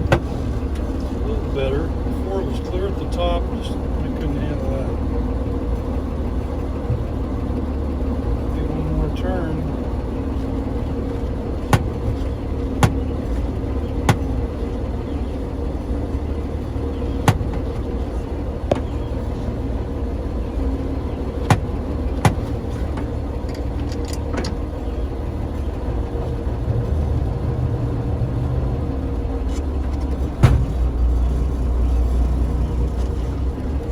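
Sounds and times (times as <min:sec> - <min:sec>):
engine idling: 0:00.0 - 0:33.9
sharp metallic clicks: 0:21.4 - 0:24.6.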